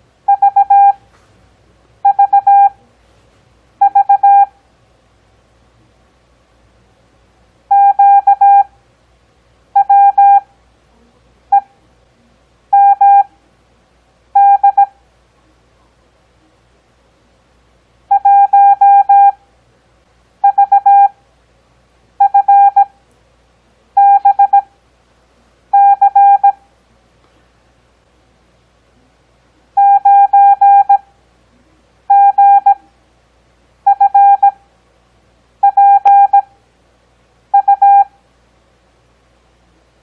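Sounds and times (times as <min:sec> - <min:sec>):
morse code beeps: 0:00.3 - 0:01.0, 0:02.0 - 0:02.8, 0:03.8 - 0:04.5, 0:07.7 - 0:08.7, 0:09.8 - 0:10.4, 0:12.7 - 0:13.3, 0:14.4 - 0:14.9, 0:18.1 - 0:19.4, 0:20.4 - 0:21.1, 0:22.2 - 0:22.9, 0:24.0 - 0:24.7, 0:25.7 - 0:26.6, 0:29.8 - 0:31.0, 0:32.1 - 0:32.8, 0:33.9 - 0:34.6, 0:35.6 - 0:36.5, 0:37.6 - 0:38.1.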